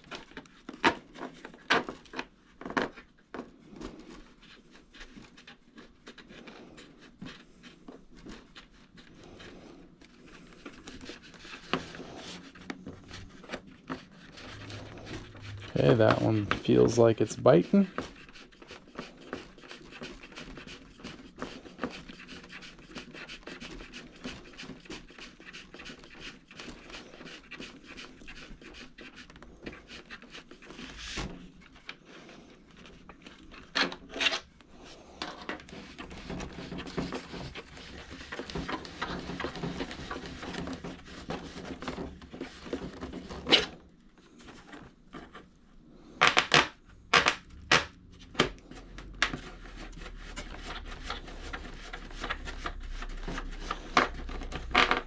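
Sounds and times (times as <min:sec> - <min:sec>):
screwdriver scratching and rubbing: 0:10.6 - 0:30.9, 0:35.3 - 0:43.8, 0:49.3 - 0:55.0.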